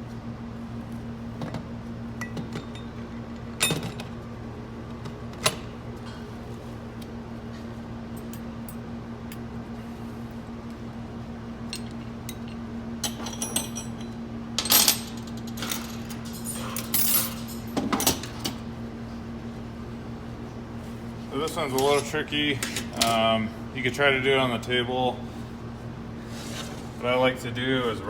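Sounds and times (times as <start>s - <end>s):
metal parts clinking and clattering: 11.8s - 18.6s.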